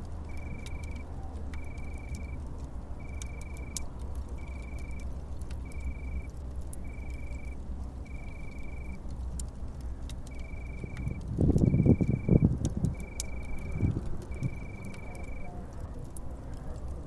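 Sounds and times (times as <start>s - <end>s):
campfire crackling and popping: 0.0s - 17.0s
crickets chirping: 0.3s - 2.4s, 3.0s - 9.0s, 10.2s - 15.5s.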